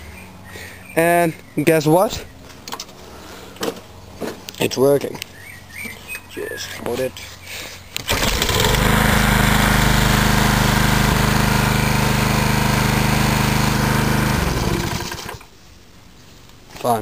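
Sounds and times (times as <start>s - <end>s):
lawn mower engine running: 8.0s - 15.5s.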